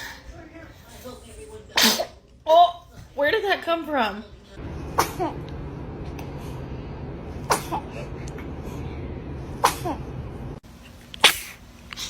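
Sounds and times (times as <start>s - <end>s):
baby sneezing: 1.7s - 2.2s, 7.5s - 7.8s, 9.6s - 10.0s, 11.2s - 11.6s.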